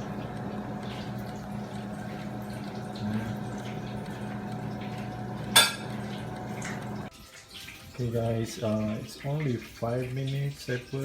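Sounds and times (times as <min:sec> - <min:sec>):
fan hum: 0:00.0 - 0:07.1.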